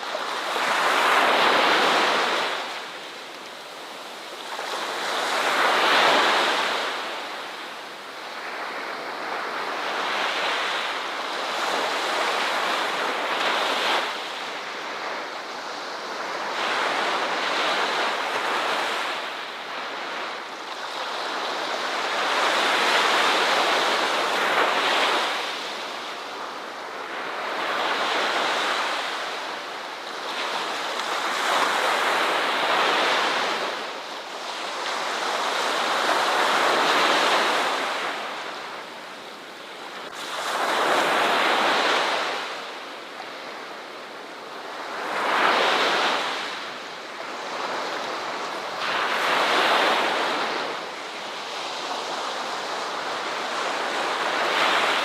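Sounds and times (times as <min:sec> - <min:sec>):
ocean waves breaking: 0:00.0 - 0:07.6.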